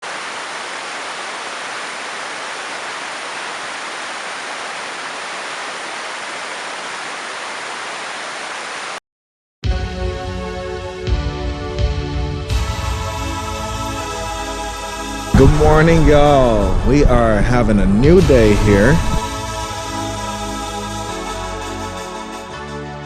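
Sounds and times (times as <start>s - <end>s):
waterfall rushing: 0.0s - 9.0s, 15.3s - 19.9s
music: 9.6s - 23.0s.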